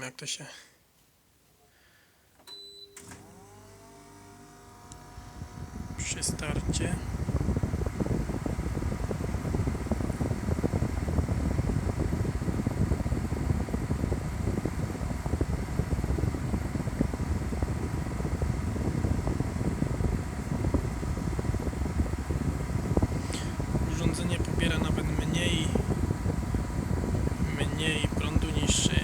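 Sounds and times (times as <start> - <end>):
air conditioner fan noise: 1.7 - 29.0.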